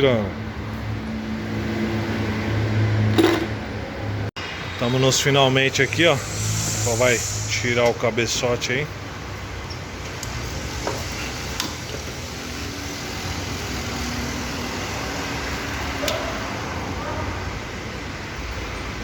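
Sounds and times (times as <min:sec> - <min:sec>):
workshop background noise: 0:00.3 - 0:19.0.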